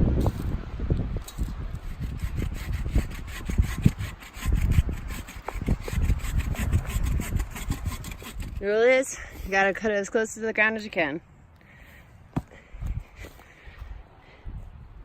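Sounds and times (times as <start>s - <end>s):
hand saw cutting wood: 1.3s - 8.7s.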